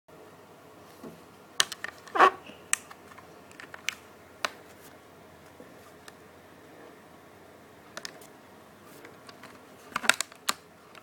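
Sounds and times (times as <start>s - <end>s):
plastic and card clicks: 9.3s - 11.0s.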